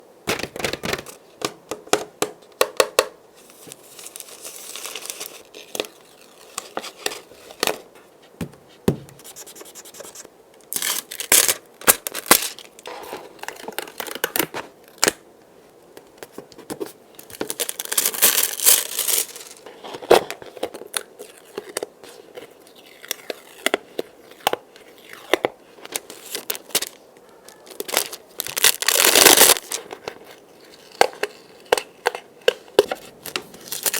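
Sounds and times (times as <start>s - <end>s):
packaging crinkling and tearing: 3.4s - 7.8s, 10.7s - 15.2s, 17.2s - 33.9s.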